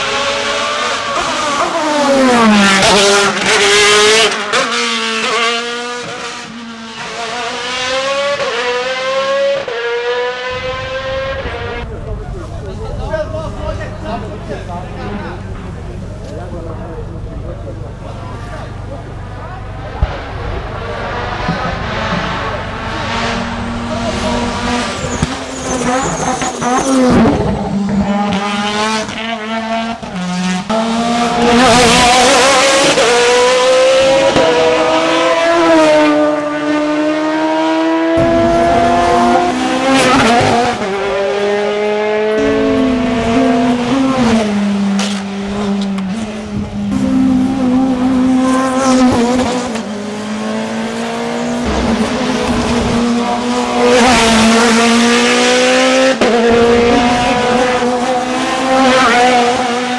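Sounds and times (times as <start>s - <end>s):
racing car engines at full throttle: 0.0s - 59.9s.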